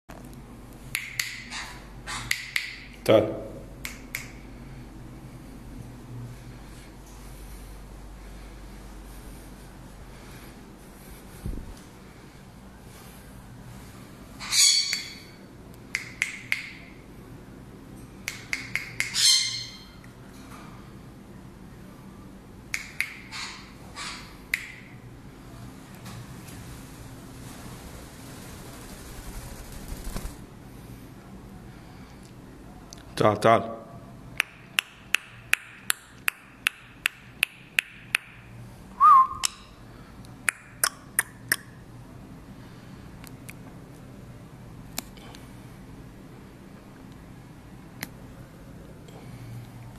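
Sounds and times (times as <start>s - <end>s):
parrot squawking harshly: 14.4s - 15.2s, 19.1s - 19.9s
short rising whistle: 39.0s - 39.5s.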